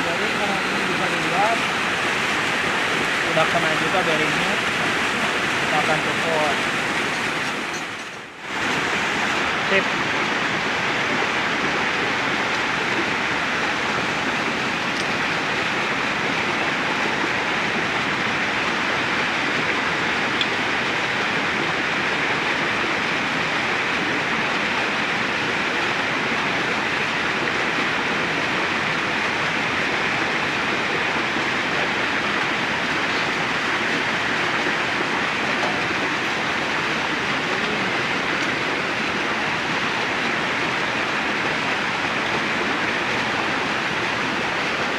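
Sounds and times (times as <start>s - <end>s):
flowing water rushing: 0.0s - 44.9s.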